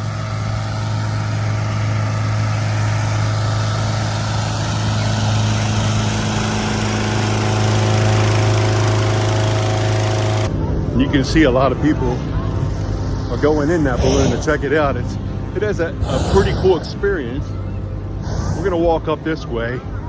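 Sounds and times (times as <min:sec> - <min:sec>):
small gasoline engine humming: 0:00.0 - 0:11.0
fan air rushing: 0:00.0 - 0:19.5.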